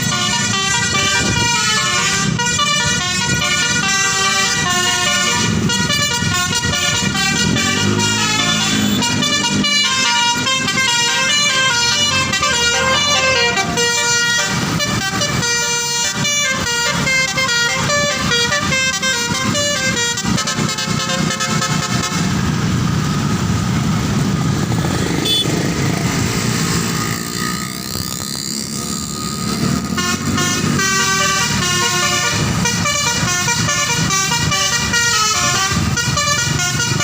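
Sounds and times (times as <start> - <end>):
bus multi-tone horn melody: 0.0 - 22.8, 24.6 - 26.0, 26.8 - 37.0
rumbling vehicle noise: 0.0 - 37.0.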